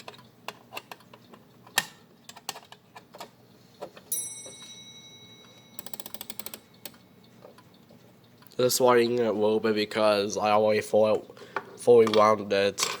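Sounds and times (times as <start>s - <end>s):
metallic ring: 4.1s - 7.1s
clock ratchet clicking: 5.7s - 7.0s.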